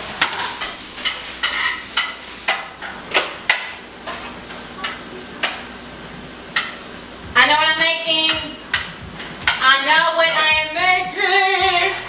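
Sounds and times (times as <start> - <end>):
light hiss of frying: 0.0 - 10.5
utensils knocking against cookware: 8.2 - 9.7.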